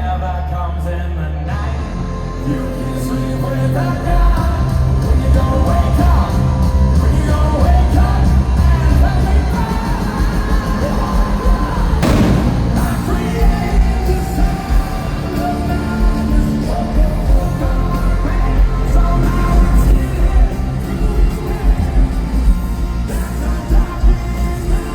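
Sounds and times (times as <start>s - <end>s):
sung and yelled vocals: 0.0s - 24.9s
live hard rock band: 1.9s - 24.9s
loud crash: 12.0s - 14.3s.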